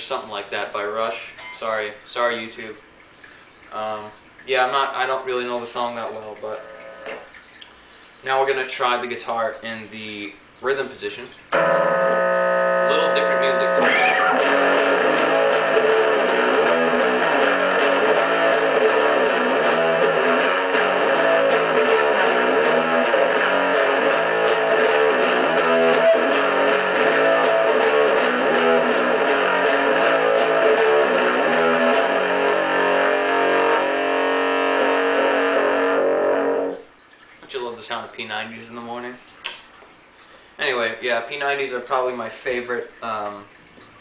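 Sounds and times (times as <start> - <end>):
electric guitar picked riff: 11.5 - 36.8.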